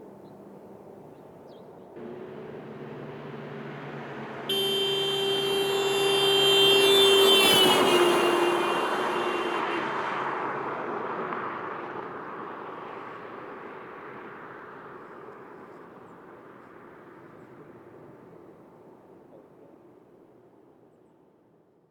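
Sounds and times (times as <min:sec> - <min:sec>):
car road noise passing: 0:02.0 - 0:15.0
car horn held down: 0:04.5 - 0:09.8.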